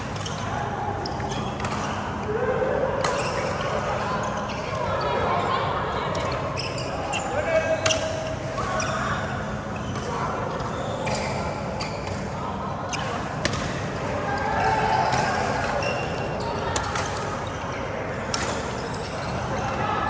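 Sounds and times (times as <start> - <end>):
chatter of voices: 0.0 - 20.0.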